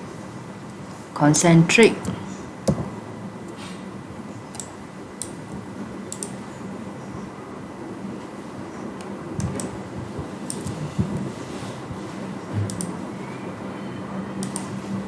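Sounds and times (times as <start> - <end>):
steady background hum: 0.0 - 15.0
computer mouse clicking: 6.1 - 6.4, 10.5 - 10.8, 12.7 - 13.0, 14.4 - 14.8.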